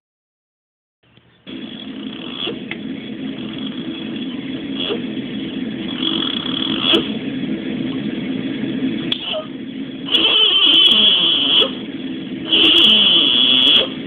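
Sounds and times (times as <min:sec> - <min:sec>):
steady low rumble: 0:01.4 - 0:14.0
child snoring: 0:01.9 - 0:02.6, 0:05.9 - 0:07.1, 0:10.1 - 0:11.8, 0:12.5 - 0:14.0.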